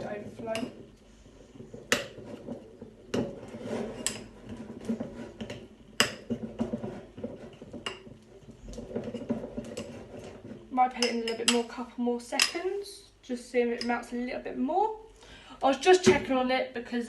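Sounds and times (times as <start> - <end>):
spoon stirring in bowl: 0.3 - 11.7.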